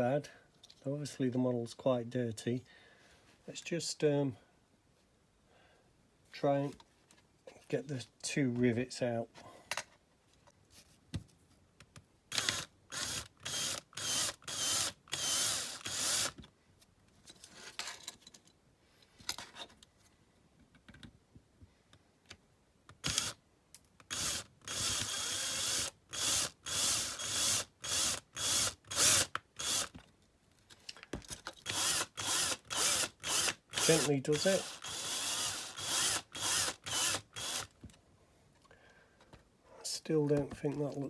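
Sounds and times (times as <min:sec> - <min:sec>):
small electric drill: 0:12.3 - 0:16.4, 0:23.0 - 0:23.4, 0:24.1 - 0:30.0, 0:31.6 - 0:37.7.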